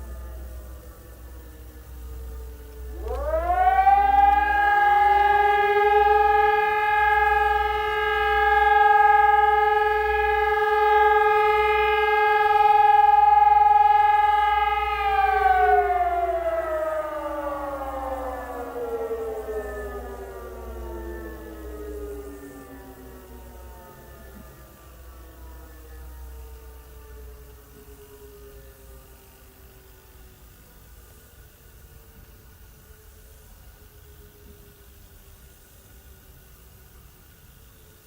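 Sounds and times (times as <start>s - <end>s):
civil defence siren: 0.0s - 30.3s.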